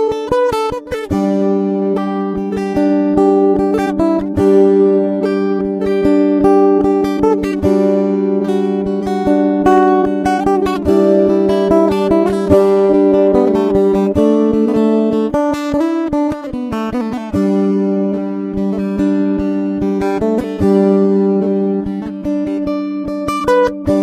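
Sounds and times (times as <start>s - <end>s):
acoustic guitar music: 0.0s - 24.0s.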